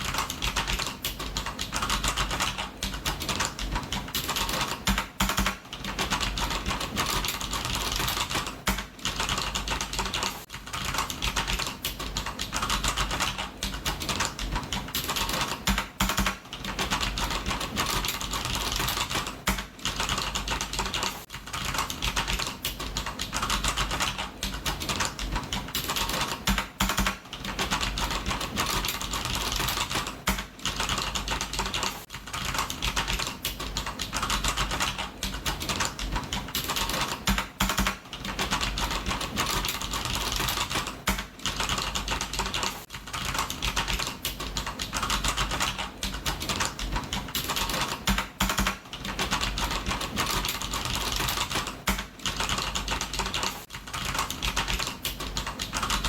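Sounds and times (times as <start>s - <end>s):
computer keyboard typing: 0.0s - 56.0s.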